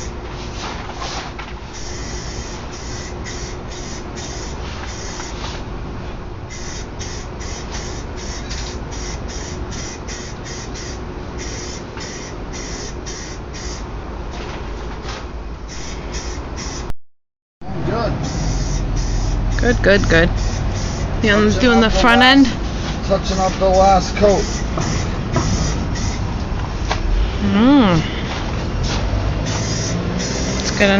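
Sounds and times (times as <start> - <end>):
low rumble and hum: 0.0 - 16.9, 17.6 - 30.9
spray paint can hissing: 1.8 - 5.4, 6.5 - 13.8, 15.7 - 16.8, 18.2 - 19.7, 20.4 - 21.2, 24.3 - 26.2, 28.8 - 30.8.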